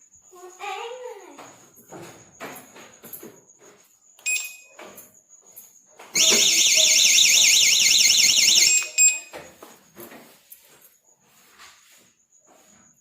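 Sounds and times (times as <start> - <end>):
bike alarm beep: 4.2 - 4.8, 6.2 - 9.5
warbling alarm siren: 6.2 - 9.3.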